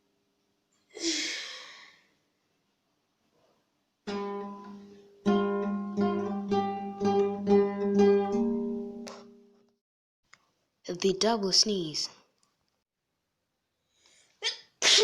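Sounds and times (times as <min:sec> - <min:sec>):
acoustic guitar strumming: 0:04.1 - 0:09.5.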